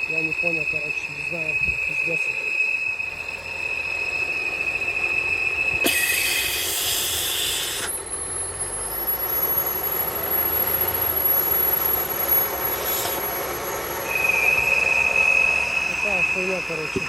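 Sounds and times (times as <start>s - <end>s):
engine running: 0.0s - 17.0s
high-pitched whistle: 0.0s - 17.0s
thin very high tone: 0.0s - 17.0s
loud hiss: 5.0s - 8.0s, 12.6s - 17.0s.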